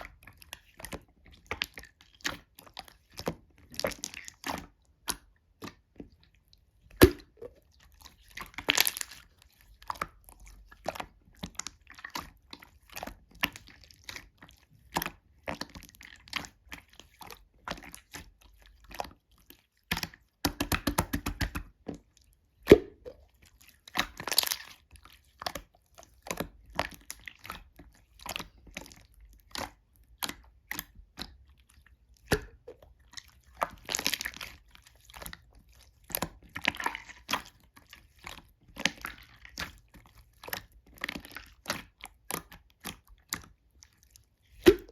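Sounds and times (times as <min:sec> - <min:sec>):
slime sticky pops and clicks: 0:07.0 - 0:07.5, 0:44.6 - 0:44.9.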